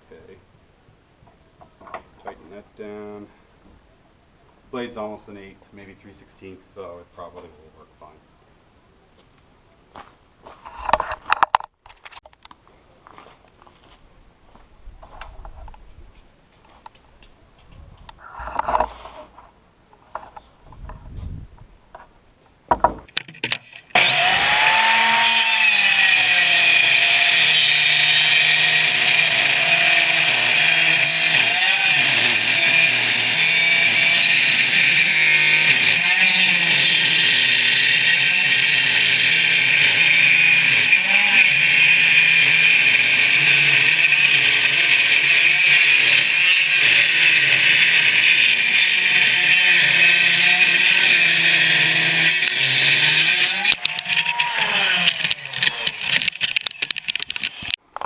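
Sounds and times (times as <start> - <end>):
clicks: 23.1 - 57.8
table saw running and cutting: 23.1 - 57.8.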